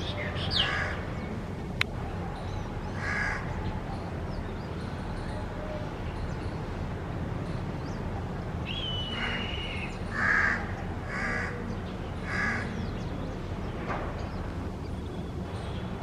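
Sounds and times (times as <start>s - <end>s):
low background rumble: 0.0s - 16.0s
harsh caw-like bird calls: 0.5s - 1.0s, 3.0s - 3.5s, 8.8s - 12.8s.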